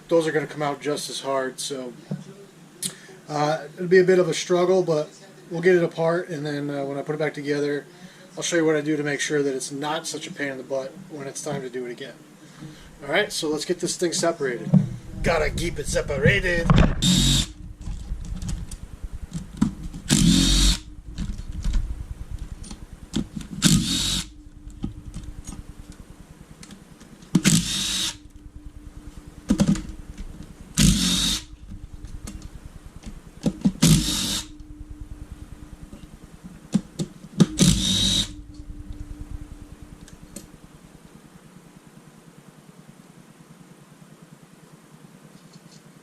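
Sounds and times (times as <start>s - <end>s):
faint steady hum: 0.0s - 46.0s
power drill spinning out bolts: 16.6s - 21.8s, 23.2s - 24.3s, 27.3s - 28.3s, 30.8s - 31.5s, 33.5s - 34.6s, 37.4s - 38.4s.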